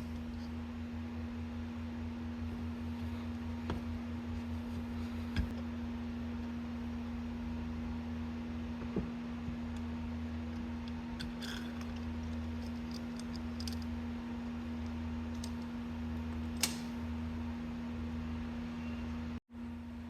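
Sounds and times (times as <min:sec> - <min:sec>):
steady low hum: 0:00.0 - 0:20.0.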